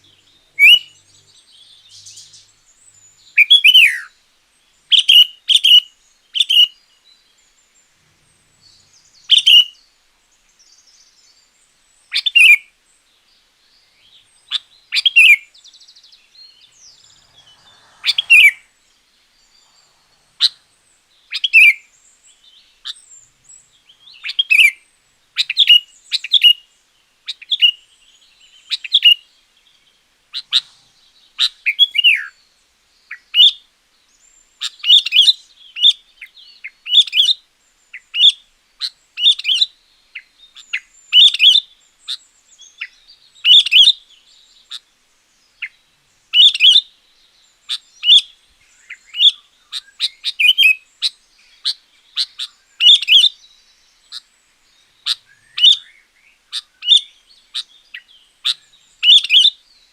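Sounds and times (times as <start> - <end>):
bird singing whistled phrases: 0.4 - 4.2, 9.2 - 9.8, 46.3 - 46.9, 47.7 - 54.2, 55.0 - 59.6.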